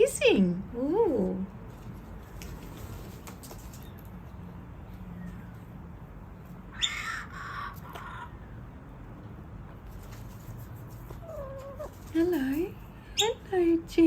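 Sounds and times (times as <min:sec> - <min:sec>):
kookaburra harsh squawks: 0:06.7 - 0:08.4.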